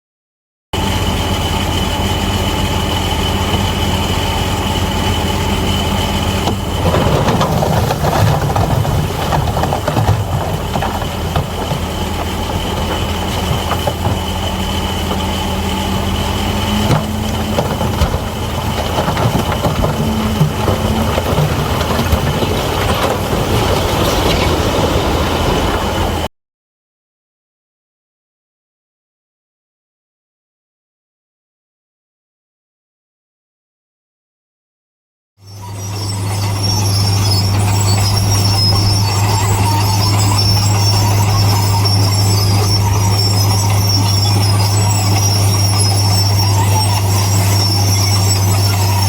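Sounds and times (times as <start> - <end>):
bulldozer diesel engine running: 0.8 - 26.3, 35.4 - 49.0
knocks and clanks: 6.2 - 26.0.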